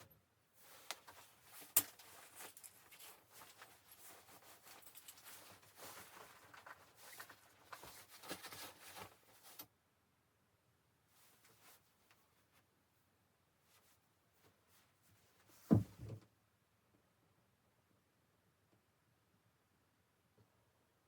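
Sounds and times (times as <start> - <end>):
rustling and handling noises: 0.0 - 9.7, 11.1 - 12.8, 13.6 - 16.2.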